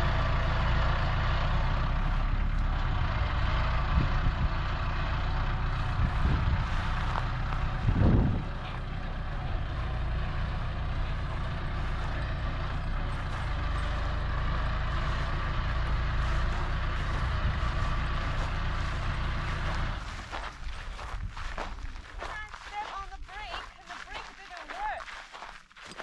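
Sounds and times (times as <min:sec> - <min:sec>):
tractor engine running: 0:00.0 - 0:26.0.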